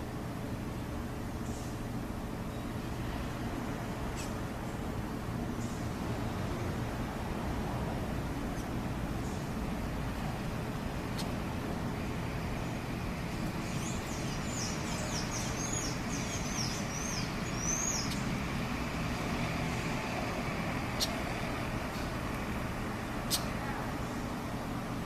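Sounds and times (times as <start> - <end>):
low rumble of traffic: 0.0 - 25.0
small bird chirping: 13.5 - 18.3, 21.0 - 21.2, 23.3 - 23.5.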